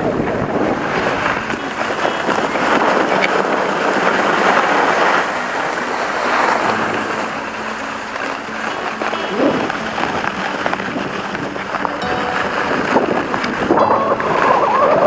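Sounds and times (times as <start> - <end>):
skis scraping over snow: 0.0 - 15.0
wind buffeting microphone: 0.0 - 15.0.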